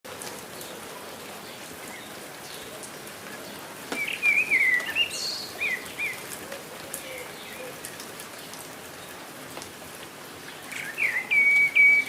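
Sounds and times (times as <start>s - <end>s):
steady rain: 0.0s - 12.0s
water dripping: 0.1s - 12.0s
songbird warbling: 3.9s - 6.2s.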